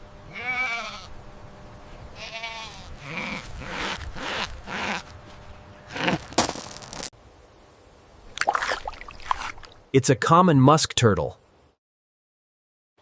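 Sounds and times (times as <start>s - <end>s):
goat bleating: 0.3s - 1.1s, 2.2s - 5.1s.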